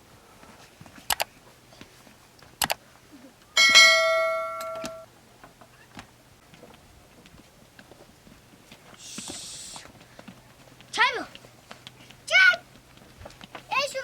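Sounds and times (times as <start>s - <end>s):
ringing metallic strike: 3.6s - 5.1s.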